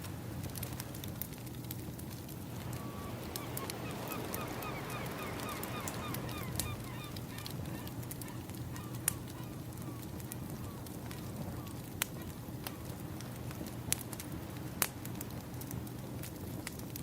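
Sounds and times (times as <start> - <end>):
firewood crackling: 0.0 - 17.0
waves washing: 2.4 - 9.6
bird honking calls: 2.8 - 10.0.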